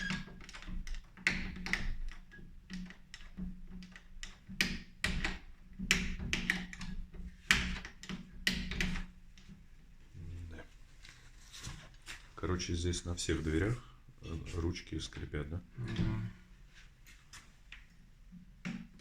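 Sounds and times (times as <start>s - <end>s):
door handle mechanism squeaking: 0.0s - 2.7s.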